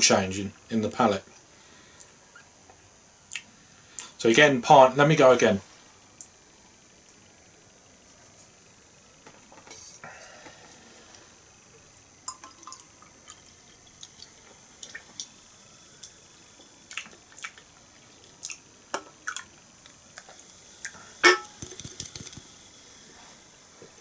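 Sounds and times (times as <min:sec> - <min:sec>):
mouth clicks and lip smacks: 0:16.9 - 0:17.6, 0:21.6 - 0:22.5.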